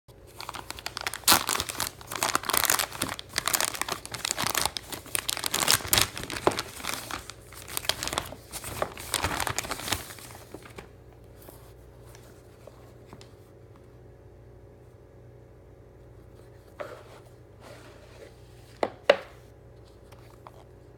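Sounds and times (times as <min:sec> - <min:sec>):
packaging crinkling and rustling: 0:00.2 - 0:13.4.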